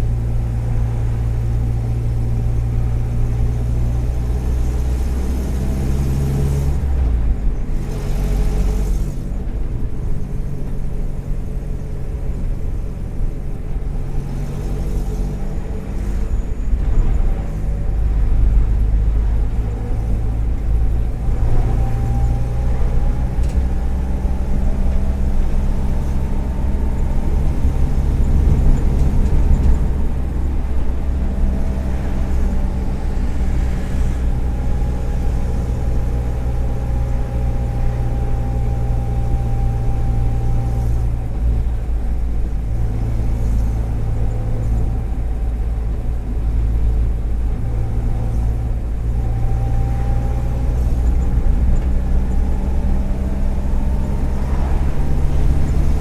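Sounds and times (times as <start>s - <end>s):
car engine running: 0.0s - 56.0s.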